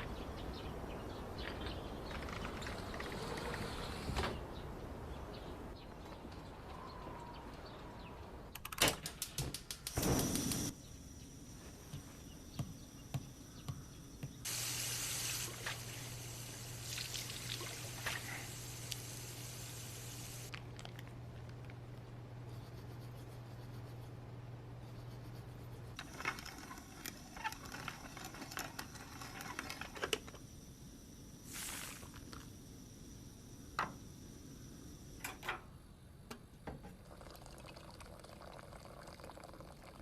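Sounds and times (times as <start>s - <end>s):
water running: 14.4s - 20.5s.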